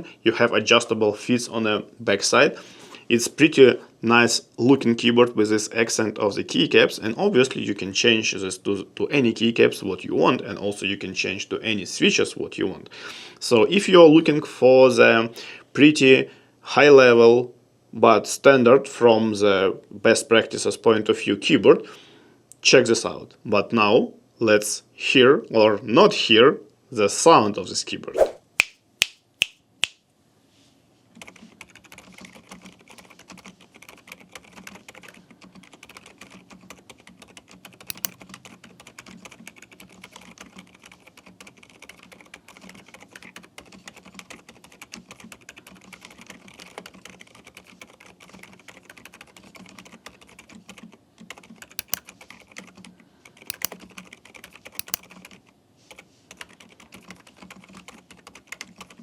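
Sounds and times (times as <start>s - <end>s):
soft keyboard keystrokes: 31.2s - 59.0s.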